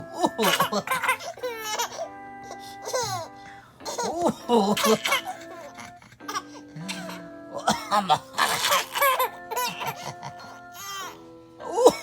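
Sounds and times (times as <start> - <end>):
background music with held notes: 0.0 - 12.0
baby giggling and squealing: 0.4 - 2.1, 8.4 - 11.2
man pretend coughing: 11.7 - 12.0.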